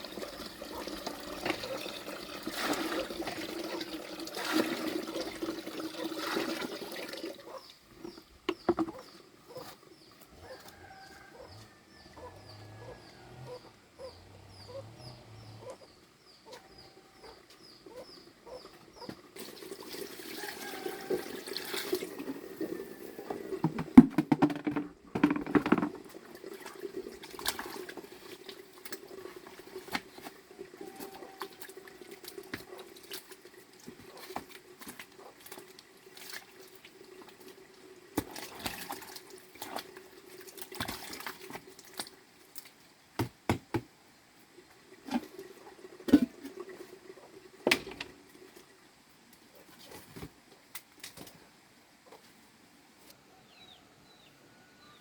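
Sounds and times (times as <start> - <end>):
water running: 0.0 - 9.1, 19.3 - 24.6
knocks and clatters: 23.6 - 26.0.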